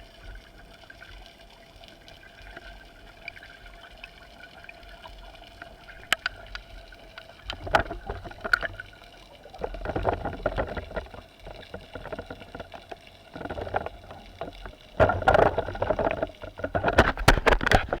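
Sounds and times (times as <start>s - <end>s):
faint steady hum: 0.0s - 18.0s
water sloshing and splashing: 0.0s - 18.0s
small clicks: 5.1s - 18.0s.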